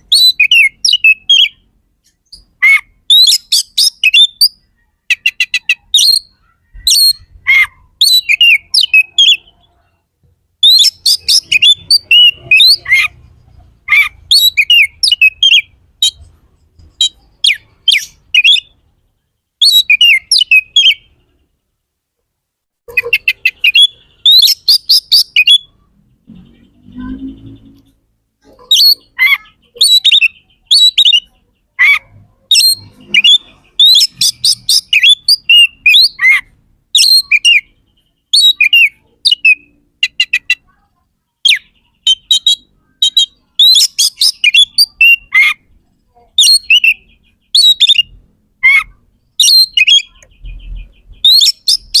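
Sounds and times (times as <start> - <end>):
songbird whistling song: 0.0 - 10.0, 10.6 - 21.4, 22.9 - 40.7, 41.4 - 52.0.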